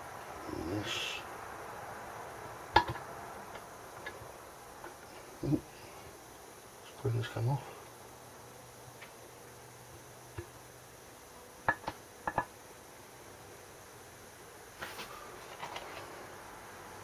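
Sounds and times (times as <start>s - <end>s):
rustling: 14.8s - 16.3s.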